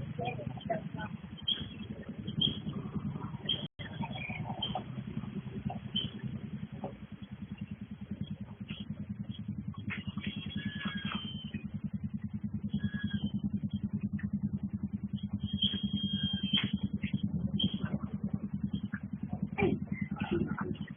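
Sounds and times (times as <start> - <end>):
small engine running: 0.0 - 20.9
high-pitched chirps: 0.2 - 4.9.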